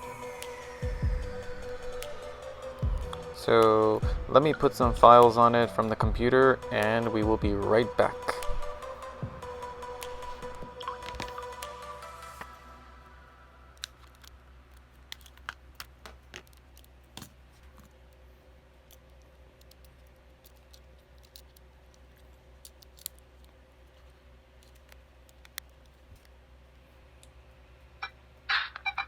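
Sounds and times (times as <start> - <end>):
tune: 0.0 - 13.9
low steady hum: 0.0 - 29.0.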